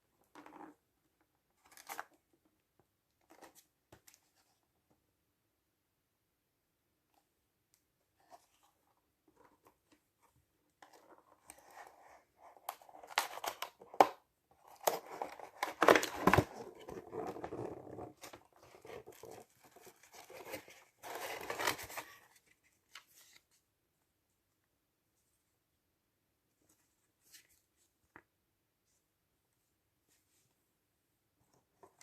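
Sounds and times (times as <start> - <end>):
packaging rustling and crinkling: 14.7 - 22.4.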